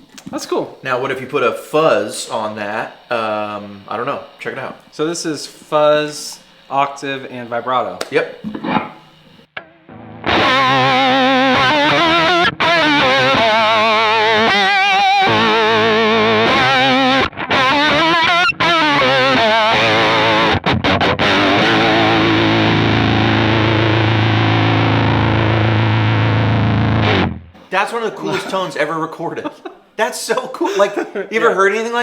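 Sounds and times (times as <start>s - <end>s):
distorted electric guitar: 8.4s - 27.7s.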